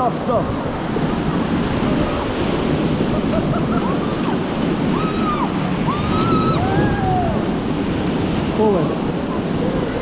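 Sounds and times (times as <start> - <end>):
river rapids rushing: 0.0 - 10.0
wind on microphone: 0.0 - 10.0
people whooping: 4.9 - 7.4.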